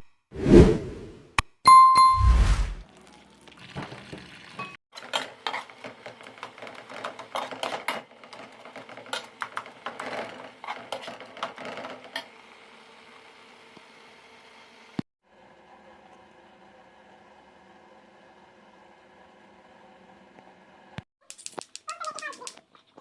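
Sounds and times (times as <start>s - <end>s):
utensils and dishes clattering: 3.7s - 12.3s.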